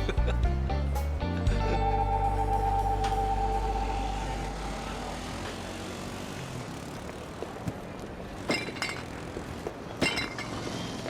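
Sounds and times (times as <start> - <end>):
low chord of music: 0.5 - 6.7
steady background noise: 1.7 - 11.0.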